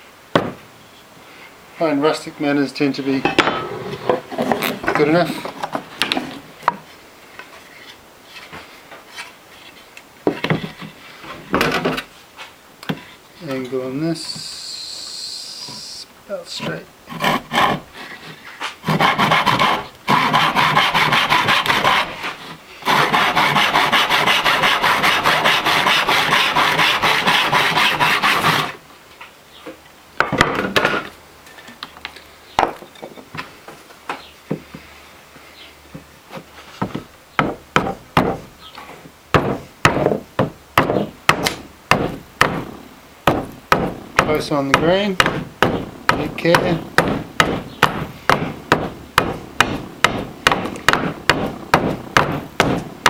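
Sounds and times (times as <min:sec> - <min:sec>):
chopping blows on wood: 0:00.4 - 0:00.6, 0:39.4 - 0:52.9
saw cutting through wood: 0:16.6 - 0:18.1, 0:18.8 - 0:28.8.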